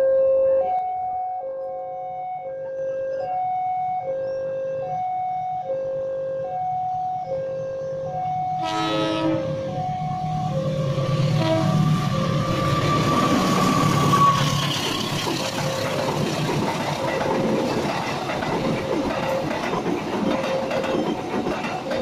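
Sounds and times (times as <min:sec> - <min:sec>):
train cars rumbling: 0:07.2 - 0:22.0
train horn: 0:08.1 - 0:14.7
wheels clacking over rail joints: 0:11.3 - 0:22.0.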